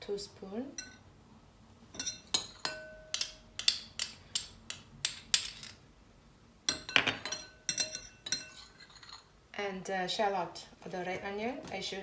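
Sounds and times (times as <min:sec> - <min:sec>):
spoon clinking against a bowl: 0:00.8 - 0:01.0, 0:02.0 - 0:05.8, 0:06.7 - 0:09.3.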